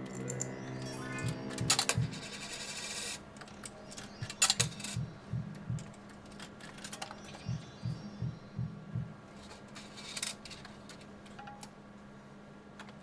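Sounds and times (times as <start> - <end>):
low thumping pulse: 0.0 - 2.4, 4.2 - 5.9, 7.4 - 9.2
electronic machine jingle: 0.0 - 2.8
steady hum: 0.0 - 6.4.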